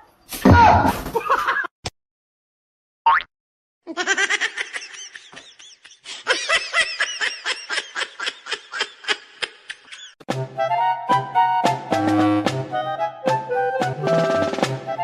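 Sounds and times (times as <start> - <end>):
person laughing hard: 3.9 - 10.2
music with drums: 11.6 - 15.0.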